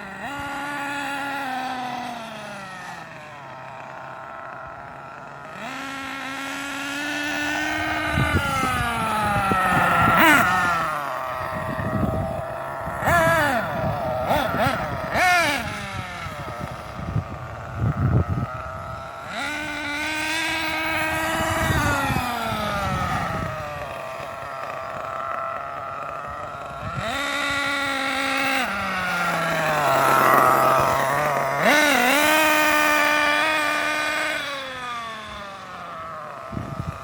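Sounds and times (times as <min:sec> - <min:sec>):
nitro engine revving: 0:00.0 - 0:37.0
wind buffeting microphone: 0:05.6 - 0:37.0.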